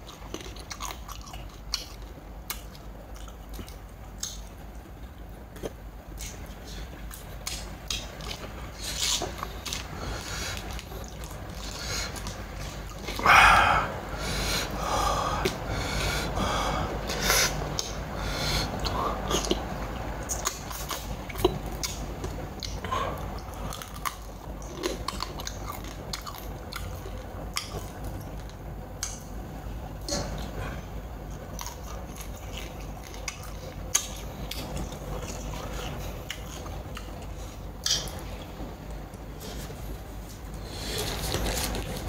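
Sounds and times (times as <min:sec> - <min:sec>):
person chewing and biting: 0:00.0 - 0:04.6, 0:20.3 - 0:28.4, 0:31.4 - 0:38.4.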